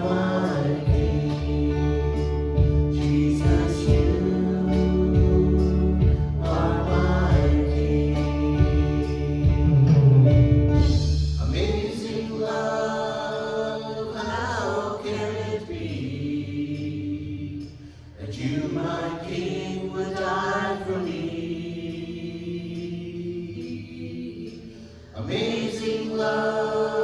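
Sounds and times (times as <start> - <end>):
low bass: 0.0 - 11.8
people singing: 0.0 - 27.0
worship band playing: 0.0 - 27.0.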